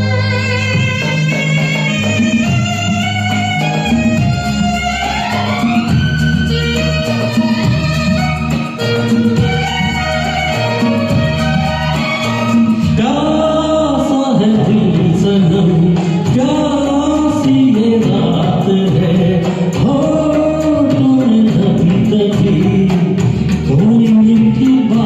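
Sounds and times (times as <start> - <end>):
karaoke backing track: 0.0 - 25.0
man singing: 11.3 - 25.0.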